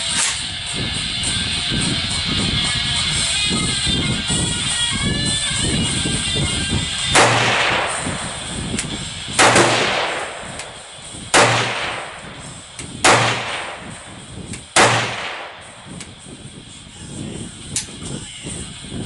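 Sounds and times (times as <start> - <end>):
rifle shots with rolling echo: 7.1 - 16.0.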